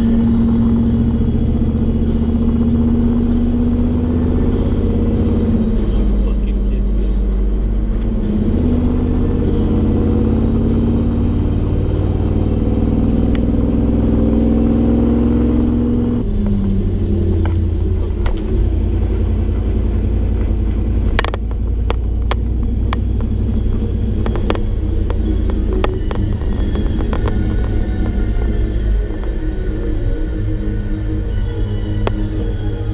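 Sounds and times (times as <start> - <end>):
truck engine running: 0.0 - 32.9
clicks and rattles: 20.4 - 23.4.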